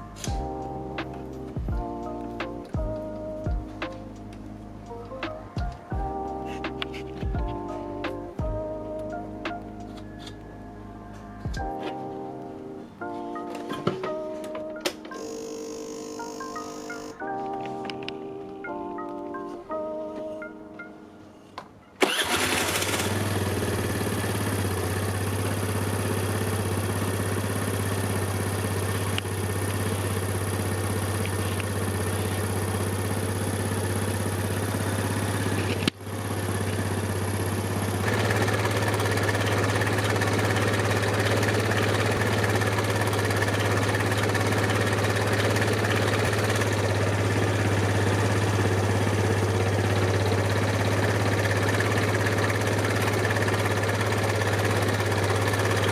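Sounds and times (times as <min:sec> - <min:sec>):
scooter engine idling: 0:22.0 - 0:55.9.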